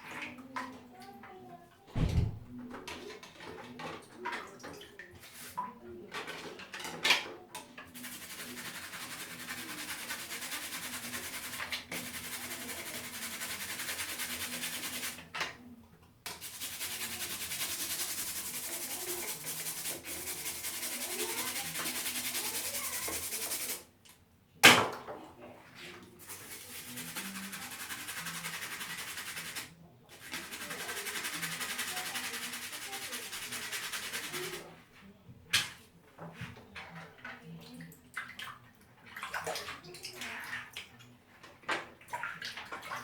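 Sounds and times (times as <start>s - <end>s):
scrubbing plastic: 7.9s - 15.2s, 16.3s - 23.8s, 26.2s - 34.6s.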